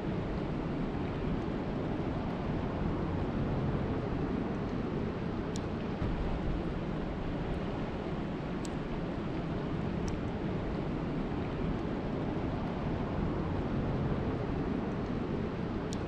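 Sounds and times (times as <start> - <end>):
faint high ticks: 8.6 - 8.8.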